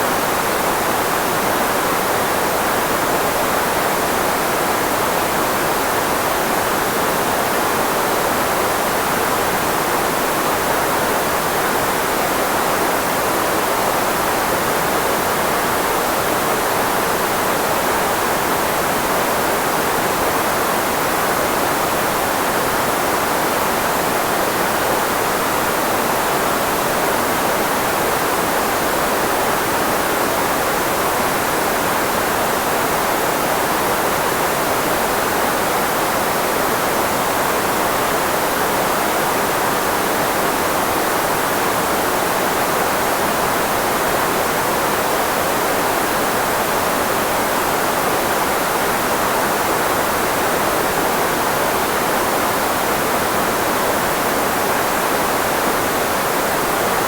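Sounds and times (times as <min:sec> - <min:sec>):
filtered white noise hiss: 0:00.0 - 0:57.0.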